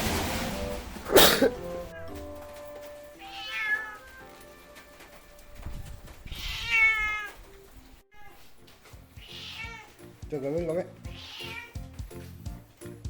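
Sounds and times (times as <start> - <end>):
soft background music: 0.6 - 13.0
cat meowing: 3.2 - 4.2, 6.2 - 7.5, 8.1 - 10.0, 11.0 - 11.9.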